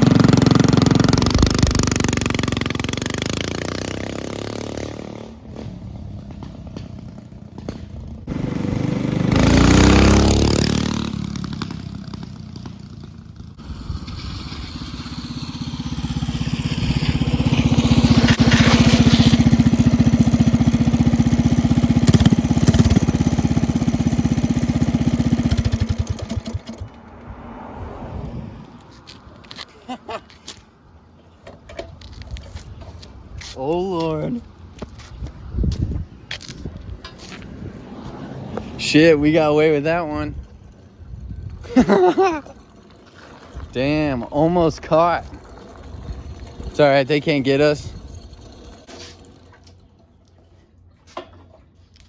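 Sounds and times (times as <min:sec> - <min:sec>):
minibike engine running: 0:00.0 - 0:27.1, 0:37.0 - 0:50.6.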